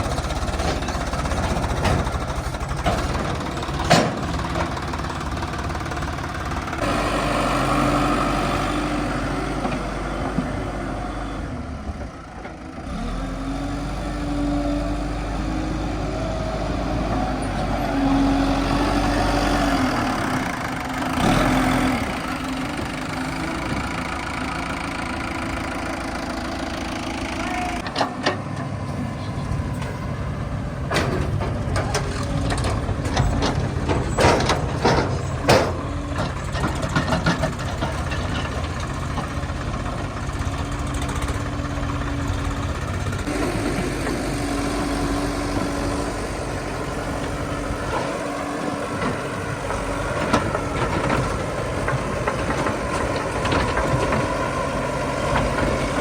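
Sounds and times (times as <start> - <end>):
diesel machinery running: 0.0 - 56.0
sharp knocks and clanks: 0.6 - 4.9.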